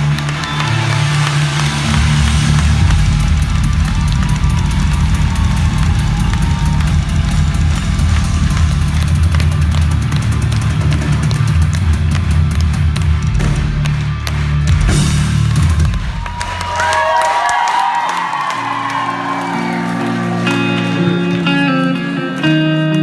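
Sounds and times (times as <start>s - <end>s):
heavy bass: 0.0s - 17.7s
driving drum beat: 0.0s - 20.4s
live band playing loud music: 0.0s - 23.0s.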